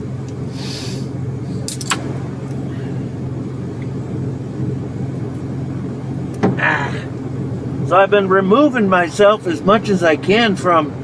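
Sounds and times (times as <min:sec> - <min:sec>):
vehicle engine droning: 0:00.0 - 0:11.0
sharp click: 0:01.7 - 0:02.2.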